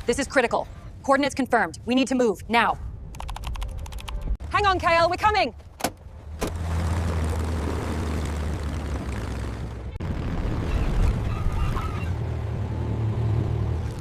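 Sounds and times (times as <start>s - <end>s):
low engine rumble: 6.0s - 14.0s
noisy wash: 6.3s - 13.5s.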